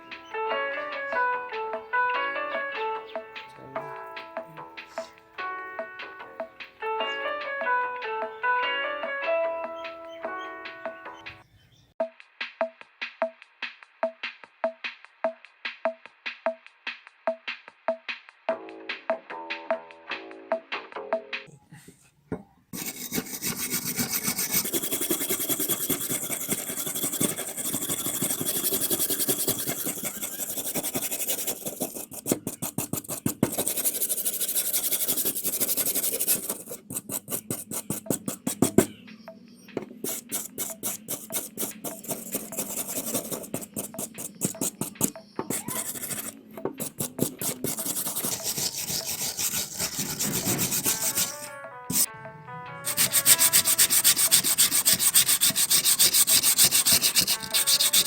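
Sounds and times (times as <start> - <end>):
scraping rust off metal: 22.8 - 38.9, 39.8 - 52.1, 52.9 - 58.0.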